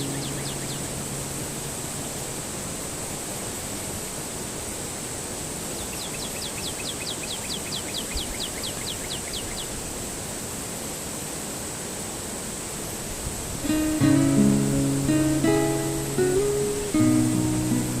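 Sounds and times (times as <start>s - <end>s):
bird singing a trill: 0.0s - 1.3s, 5.8s - 9.7s
river water rushing: 0.0s - 6.0s, 9.6s - 18.0s.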